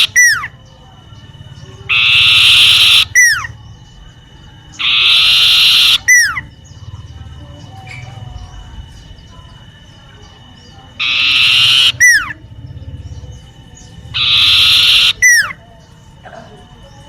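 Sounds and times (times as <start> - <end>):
bird buzzy trills: 0.0 - 17.0
bird falling whistle: 11.0 - 12.3.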